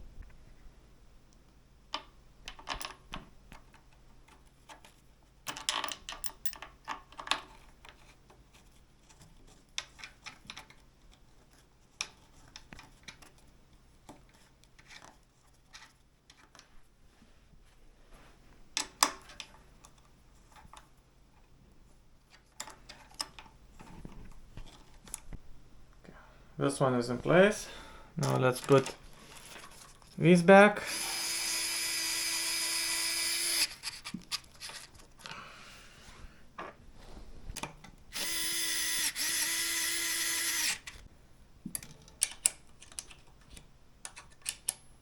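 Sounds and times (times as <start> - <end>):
screws and hand tools clicking: 30.9 - 34.8, 38.1 - 41.0.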